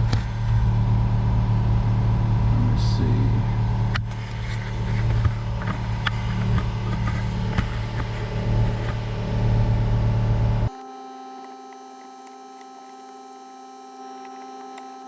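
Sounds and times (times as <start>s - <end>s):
low mechanical hum: 0.0s - 15.0s
screwdriver clicking on plastic: 10.7s - 15.0s.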